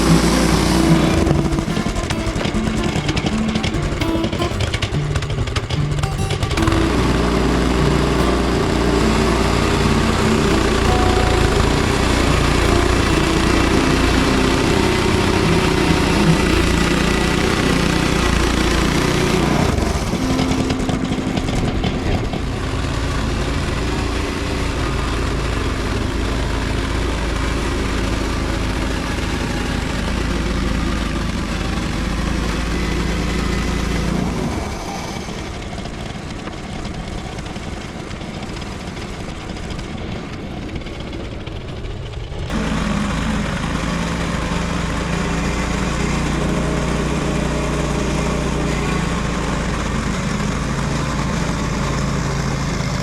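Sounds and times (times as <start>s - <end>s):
small gas engine running: 0.0s - 53.0s.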